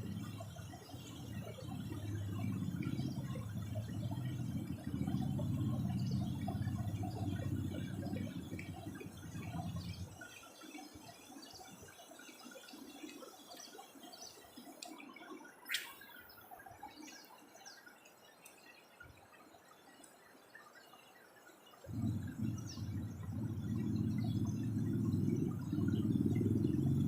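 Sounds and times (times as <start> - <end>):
low mechanical hum: 0.0 - 11.9, 21.8 - 27.0
faint chirps: 0.0 - 27.0.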